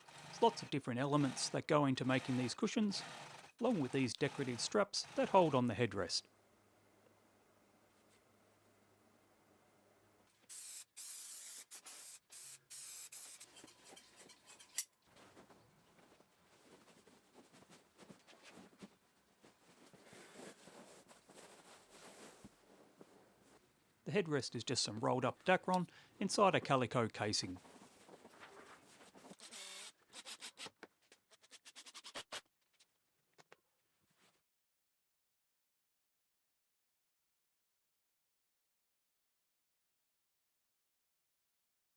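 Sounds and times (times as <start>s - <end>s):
spray adhesive hissing: 10.5s - 13.4s
faint scratching and rubbing: 13.4s - 23.7s
soft rustling: 13.6s - 24.0s, 27.5s - 29.4s.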